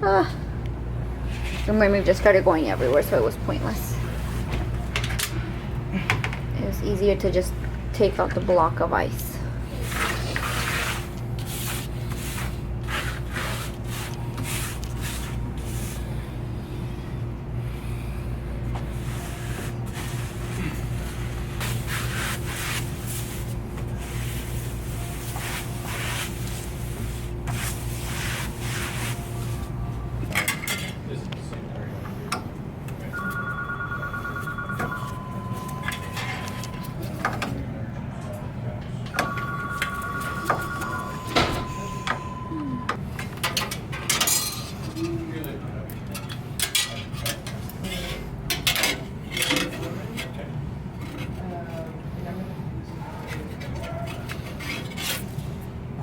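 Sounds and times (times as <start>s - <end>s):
low electrical hum: 0.0s - 56.0s
electronic telephone tones: 33.1s - 37.0s, 39.2s - 43.0s.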